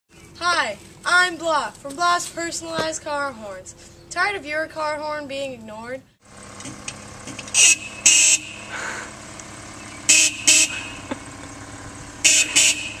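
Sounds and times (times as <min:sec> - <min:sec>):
car horn toots: 0:07.5 - 0:08.8, 0:10.0 - 0:11.1, 0:12.2 - 0:13.0.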